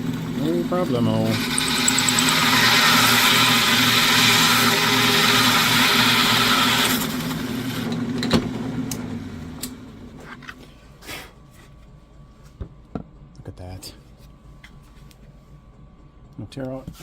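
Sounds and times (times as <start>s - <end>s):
electric drill cutting plywood: 0.0s - 9.7s.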